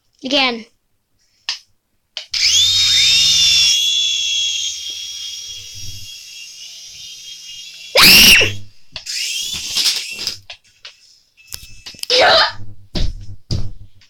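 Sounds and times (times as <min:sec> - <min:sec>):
toy helicopter motor whine: 0:02.4 - 0:10.4.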